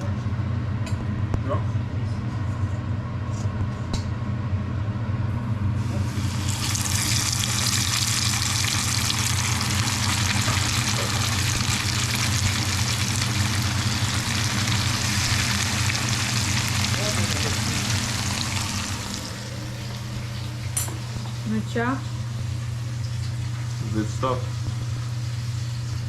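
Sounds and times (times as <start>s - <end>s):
boat engine humming: 7.1s - 23.1s.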